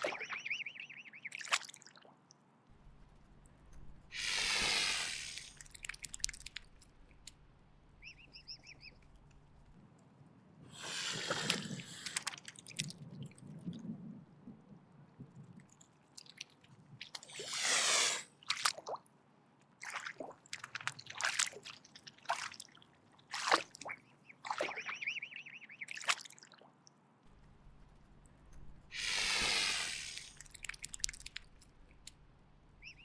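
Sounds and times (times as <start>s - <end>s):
swan hissing: 4.1s - 6.2s, 10.7s - 12.3s, 17.3s - 18.4s, 28.7s - 33.0s.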